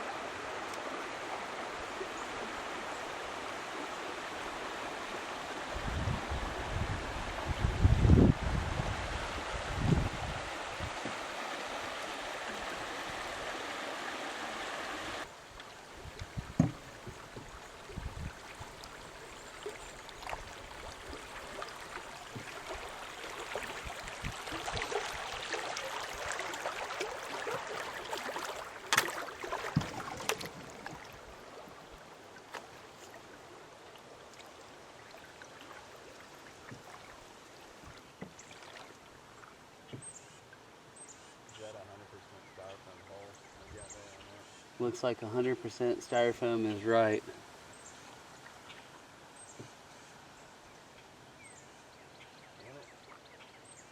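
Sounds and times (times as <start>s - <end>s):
river water rushing: 0.0s - 37.8s
knocks and splashes on canoe: 5.7s - 13.4s, 16.0s - 33.3s, 36.4s - 39.0s.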